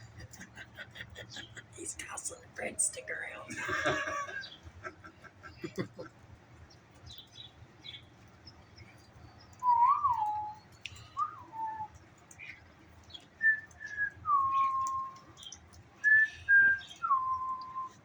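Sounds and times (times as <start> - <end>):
faint bird chirps: 7.1 - 18.0
whistled notes: 9.6 - 10.6, 11.2 - 11.9, 13.4 - 15.4, 16.0 - 18.0.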